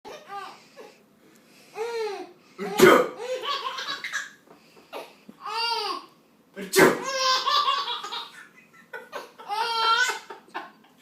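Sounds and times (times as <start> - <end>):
baby laughing: 1.8 - 6.1, 6.9 - 11.0.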